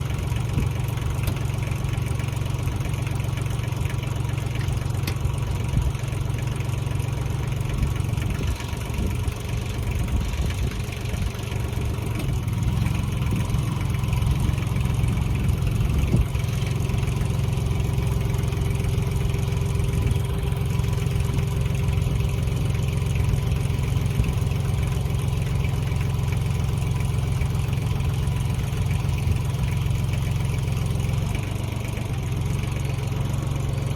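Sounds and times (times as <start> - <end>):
tractor engine running: 0.0 - 33.9.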